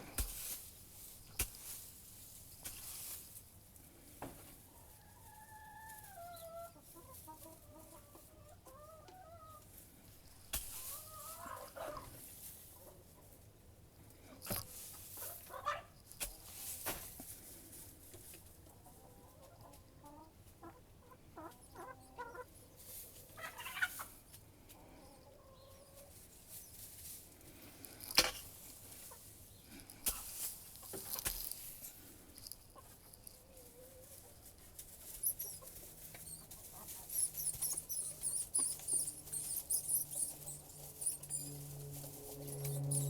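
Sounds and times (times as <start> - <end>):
chickens clucking: 4.2 - 9.8, 10.6 - 13.4, 14.7 - 16.5, 18.2 - 27.0, 32.5 - 43.0
high-pitched squeaks: 35.0 - 43.0.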